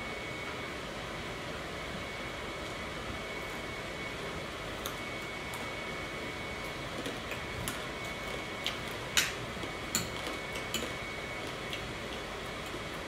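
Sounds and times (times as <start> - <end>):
chewing crunchy food: 6.6 - 13.0.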